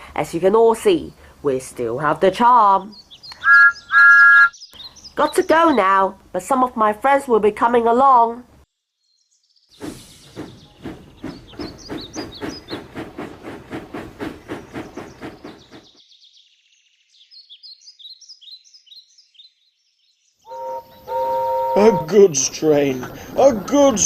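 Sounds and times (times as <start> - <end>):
birds chirping: 2.6 - 6.1, 9.0 - 24.0
steam locomotive chuffing: 9.8 - 15.9.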